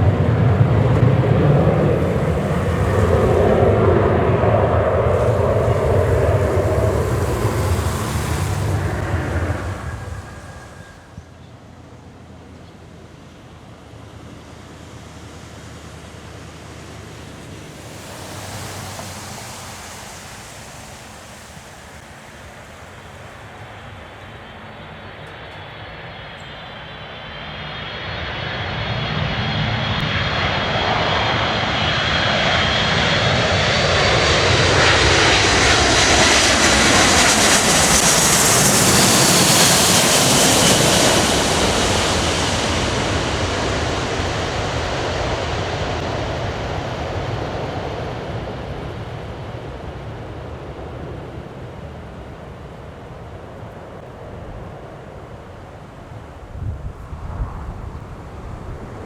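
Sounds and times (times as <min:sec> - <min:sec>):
high jet fan whine: 0:00.0 - 0:59.0
jet engine rumble: 0:00.0 - 0:59.0.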